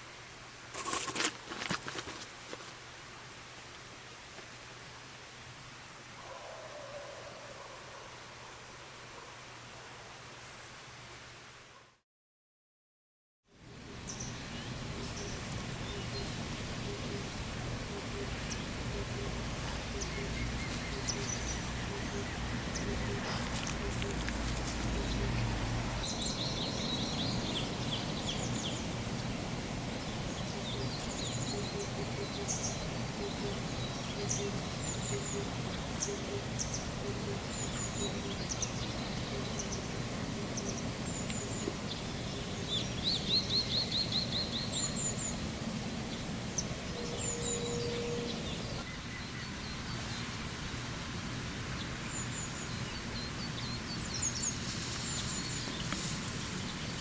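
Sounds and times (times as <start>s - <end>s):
songbirds chirping: 13.8s - 57.0s
rapid trilled birdsong: 14.0s - 45.5s, 46.1s - 50.8s
stream rushing: 14.4s - 44.7s.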